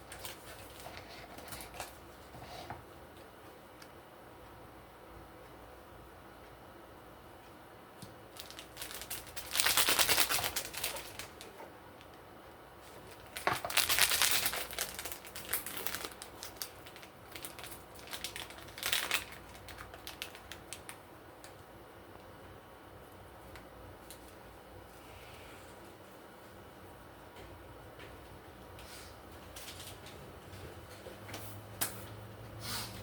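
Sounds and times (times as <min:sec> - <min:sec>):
packaging crinkling: 0:08.3 - 0:12.2, 0:12.8 - 0:21.6.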